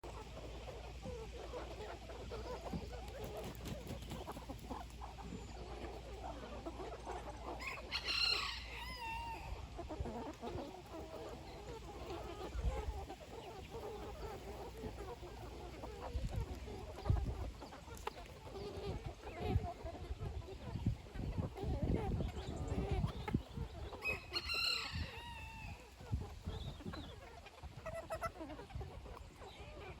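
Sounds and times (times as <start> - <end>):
chickens clucking: 0.0 - 30.0
loud high-pitched chicken call: 7.5 - 10.6, 24.0 - 25.9.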